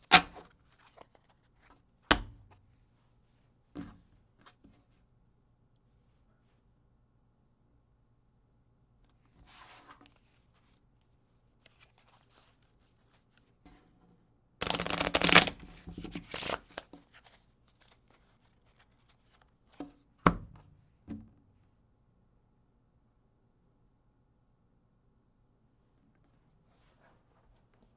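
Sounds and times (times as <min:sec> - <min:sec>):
cards knocking: 0:14.6 - 0:15.6
playing cards shuffling: 0:14.6 - 0:18.2.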